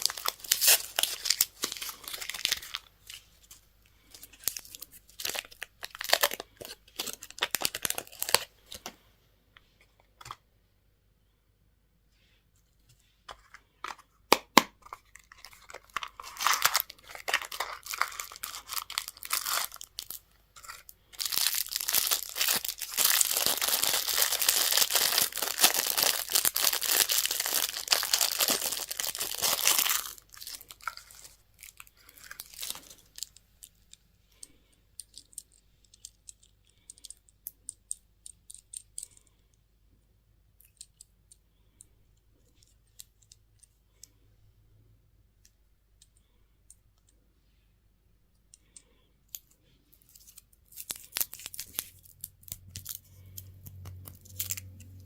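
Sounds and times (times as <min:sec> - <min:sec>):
wrapping tearing and crinkling: 0:00.0 - 0:08.9, 0:14.8 - 0:34.0, 0:50.0 - 0:55.0.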